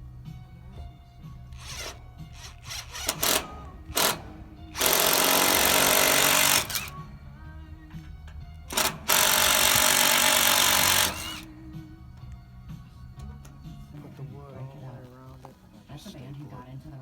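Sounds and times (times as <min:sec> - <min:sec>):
faint background music: 0:00.0 - 0:17.0
power tool running in bursts: 0:01.6 - 0:07.0, 0:08.7 - 0:11.5.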